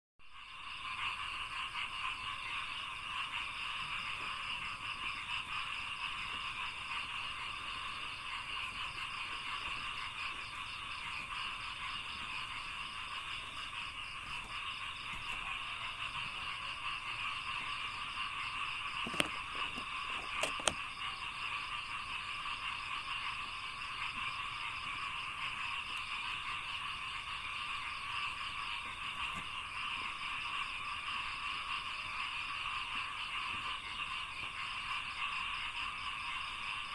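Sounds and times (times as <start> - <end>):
frogs croaking: 0.2 - 36.9
sharp clicks: 19.0 - 20.9.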